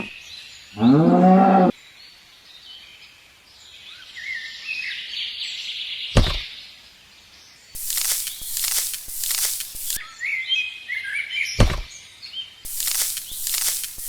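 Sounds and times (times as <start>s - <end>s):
rhythmic scraping strokes: 7.8s - 10.0s, 12.7s - 14.0s
bird chirping: 12.7s - 14.0s.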